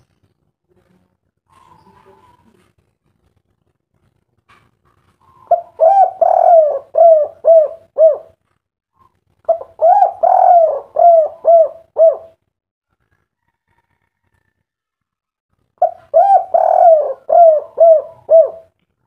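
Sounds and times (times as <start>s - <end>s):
dove cooing: 5.2s - 8.4s, 9.0s - 12.4s, 15.8s - 18.8s.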